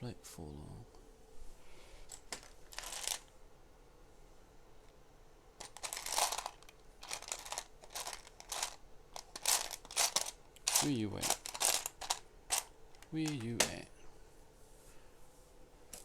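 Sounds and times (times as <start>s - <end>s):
plastic pieces rattling: 2.2s - 3.3s, 5.6s - 13.5s.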